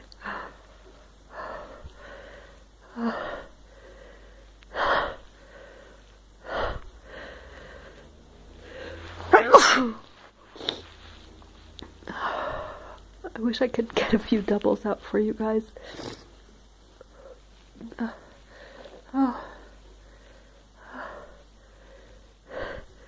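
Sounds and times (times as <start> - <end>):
woman sneezing: 9.2 - 10.0.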